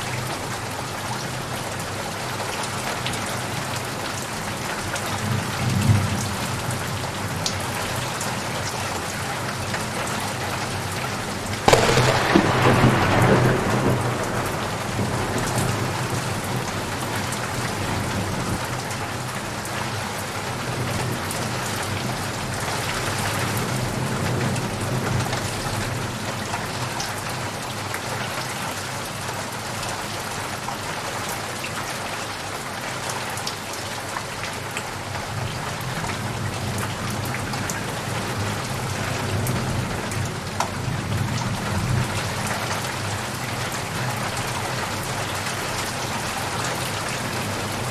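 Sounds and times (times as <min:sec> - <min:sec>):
steady rain: 0:00.0 - 0:47.9
thunder rumbling: 0:11.7 - 0:18.6.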